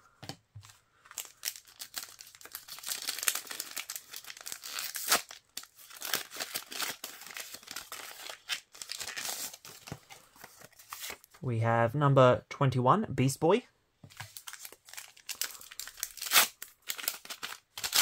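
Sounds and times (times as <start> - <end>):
plastic packet crinkling and tearing: 1.1 - 11.3, 14.2 - 18.0.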